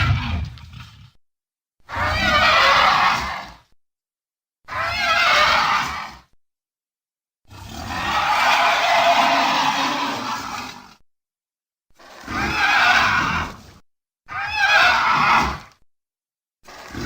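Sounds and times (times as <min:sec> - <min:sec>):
dinosaur roar: 0:00.0 - 0:01.2, 0:01.9 - 0:03.6, 0:07.6 - 0:10.6.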